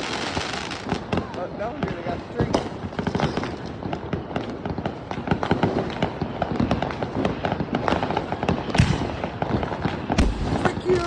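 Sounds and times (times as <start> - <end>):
fireworks and firecrackers banging: 0.0 - 11.0.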